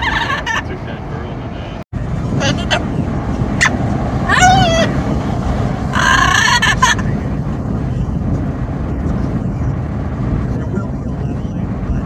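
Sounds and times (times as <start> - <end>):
parrot calling: 0.0 - 1.8, 5.9 - 7.1
car rumble: 0.0 - 12.0
wind: 0.0 - 12.0.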